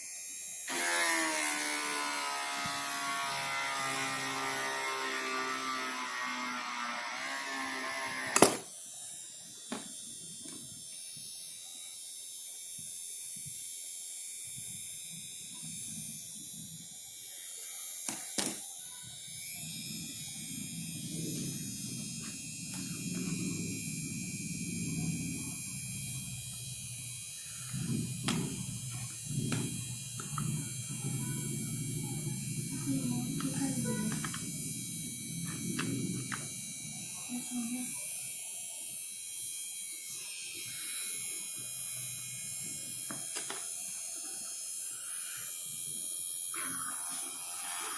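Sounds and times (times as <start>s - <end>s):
small motor whining: 0.6s - 8.7s, 14.5s - 38.4s, 39.4s - 47.9s.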